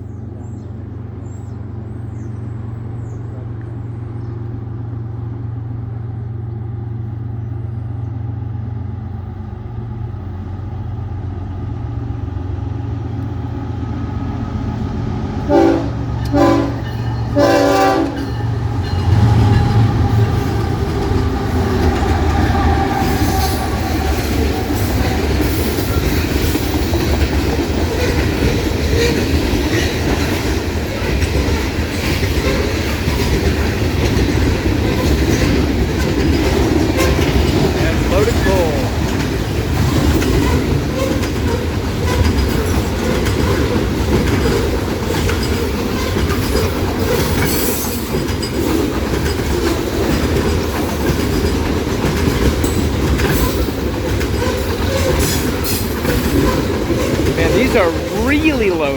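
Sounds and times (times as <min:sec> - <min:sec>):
diesel locomotives droning: 0:00.0 - 0:58.9
train wheels clattering over rails: 0:14.7 - 0:58.3
train horn blasts: 0:15.4 - 0:25.8.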